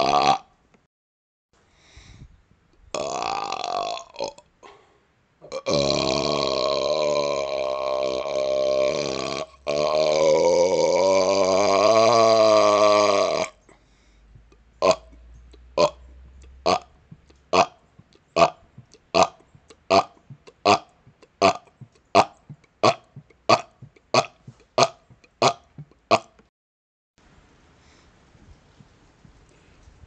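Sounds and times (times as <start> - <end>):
man belching: 0.0 - 0.5, 2.9 - 4.5, 5.4 - 13.6, 14.5 - 15.2, 15.8 - 16.0, 16.6 - 17.8, 18.4 - 26.4
short sharp burps: 0.0 - 0.5, 2.9 - 4.5, 5.4 - 13.6, 14.8 - 17.8, 18.4 - 26.4.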